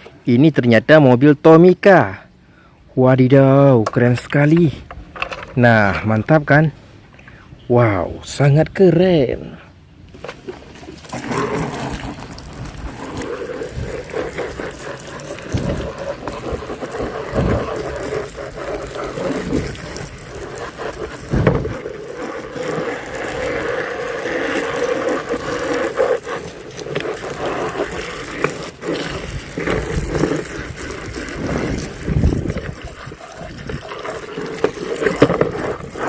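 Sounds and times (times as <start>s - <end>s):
water running and splashing: 10.4s - 36.0s.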